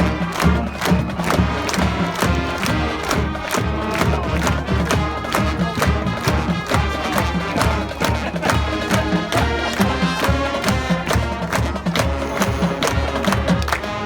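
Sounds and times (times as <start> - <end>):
drumline beat: 0.0 - 14.0
marching band brass: 0.0 - 14.0.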